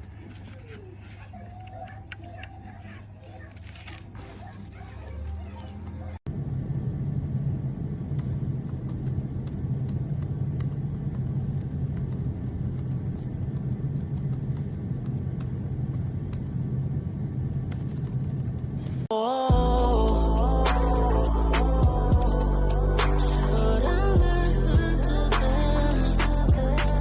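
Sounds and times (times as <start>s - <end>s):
steady low hum: 5.9s - 26.8s.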